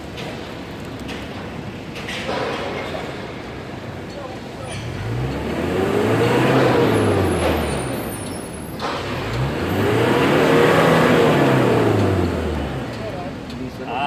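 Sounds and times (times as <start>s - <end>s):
diesel engine revving: 4.7s - 13.5s.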